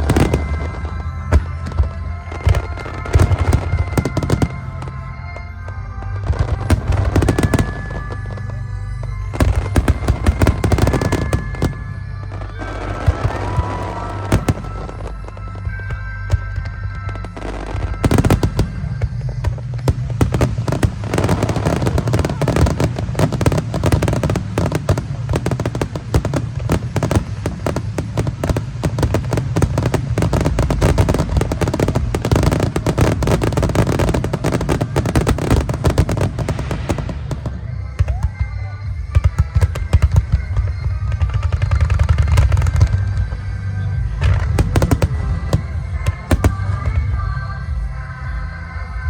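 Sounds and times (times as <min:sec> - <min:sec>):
fireworks reports and booms: 0:00.0 - 0:49.0
music playing: 0:00.0 - 0:49.0.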